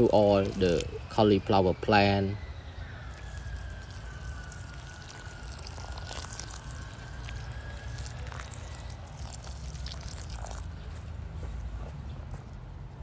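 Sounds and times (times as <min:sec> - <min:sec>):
water pouring onto soil: 0:00.0 - 0:01.0, 0:03.0 - 0:10.8.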